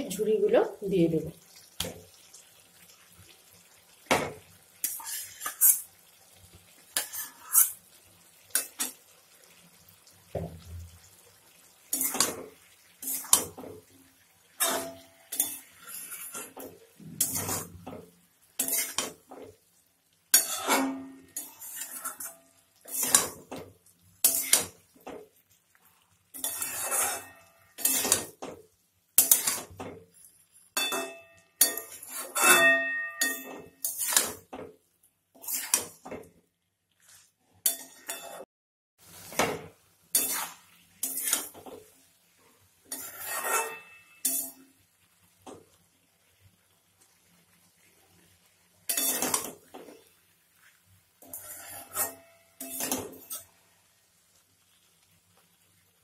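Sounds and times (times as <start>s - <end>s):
utensil scraping and knocking pan: 14.6s - 18.0s, 20.4s - 23.5s, 26.4s - 28.4s, 29.2s - 30.0s, 42.9s - 44.5s.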